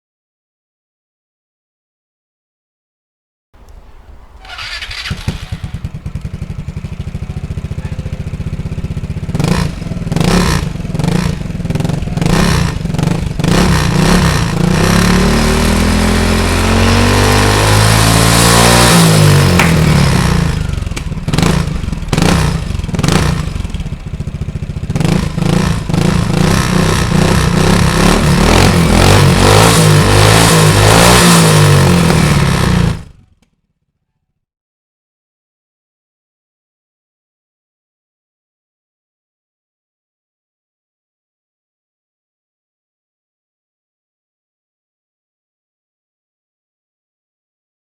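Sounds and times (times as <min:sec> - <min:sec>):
scooter engine revving: 0:03.9 - 0:33.6.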